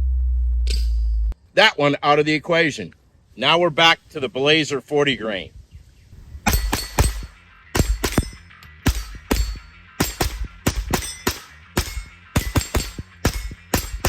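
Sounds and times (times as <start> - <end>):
rifle shots: 6.4 - 14.0
steel targets ringing: 6.4 - 14.0.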